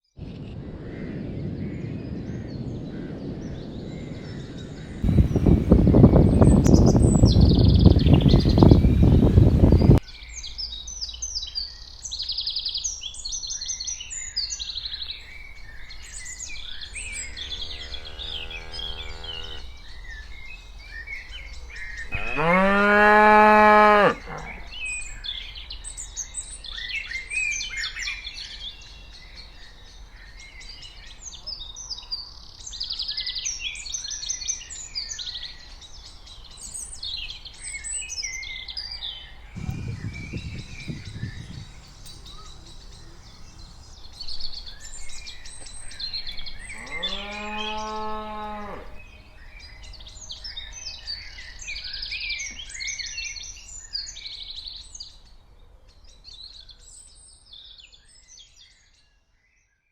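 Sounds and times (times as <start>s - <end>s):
low rumbling noise: 0.4s - 10.0s, 39.6s - 47.1s
small birds chirping: 1.4s - 58.8s
cow mooing: 16.8s - 19.8s, 22.1s - 24.8s, 46.6s - 49.1s.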